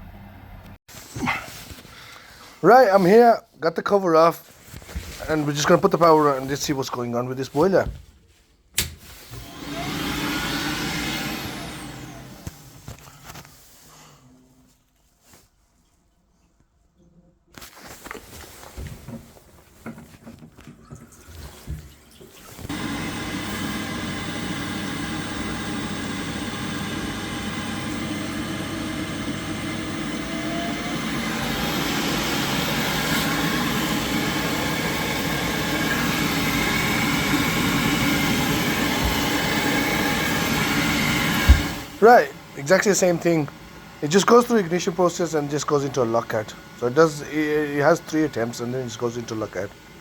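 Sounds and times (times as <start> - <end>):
boiler fan running with whine: 22.7 - 50.0.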